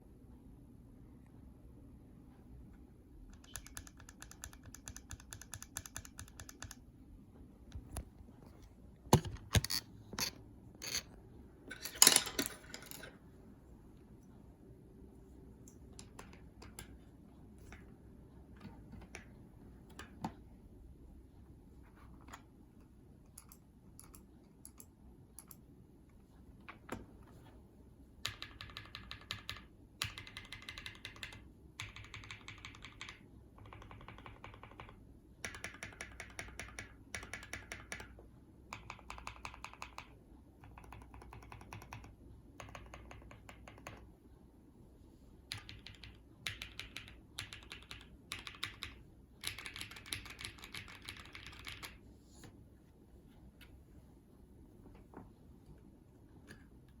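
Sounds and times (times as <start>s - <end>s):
mechanical keyboard typing: 3.2s - 6.9s, 9.1s - 11.1s, 15.9s - 17.9s, 23.2s - 25.7s, 28.2s - 44.1s, 45.4s - 52.0s.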